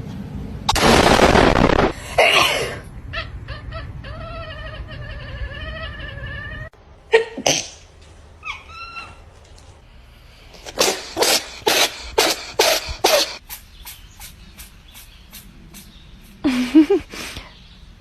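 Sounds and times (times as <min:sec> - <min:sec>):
cat sneezing: 0:10.7 - 0:13.6.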